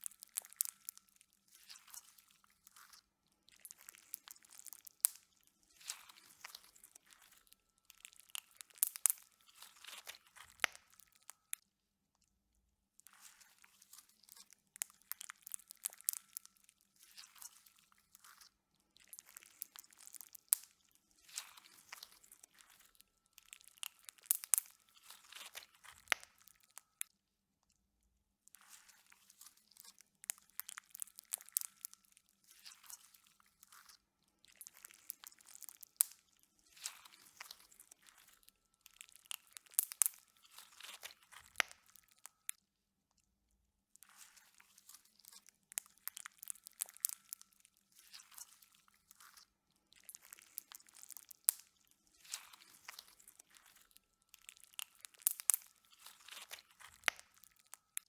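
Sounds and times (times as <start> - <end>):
slime squeezed with crackling pops: 8.3 - 11.0, 23.6 - 26.5, 39.1 - 42.1, 54.6 - 57.7.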